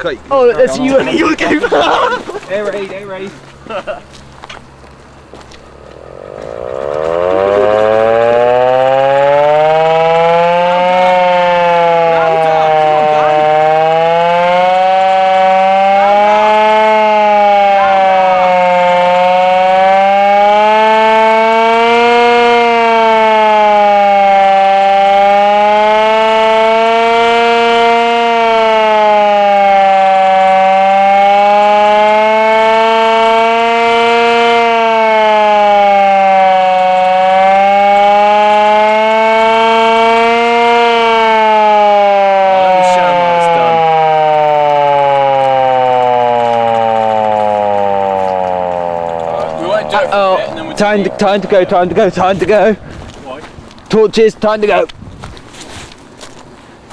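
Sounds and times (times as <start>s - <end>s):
hand-cranked air raid siren wailing: 5.7s - 53.0s.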